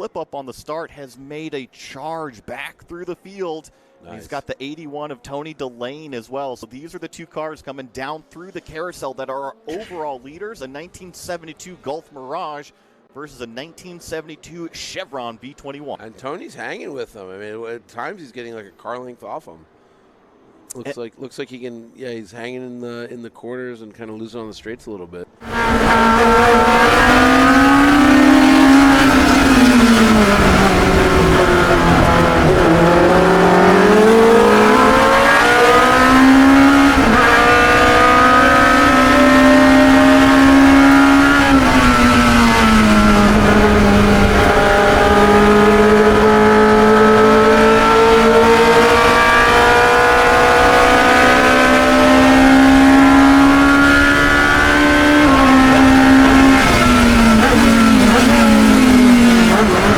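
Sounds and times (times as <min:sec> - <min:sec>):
racing car engine revving: 0:25.4 - 0:59.9.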